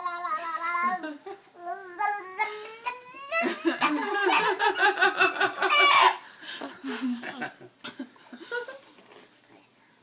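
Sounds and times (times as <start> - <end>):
high-pitched laughter: 2.0 - 6.2.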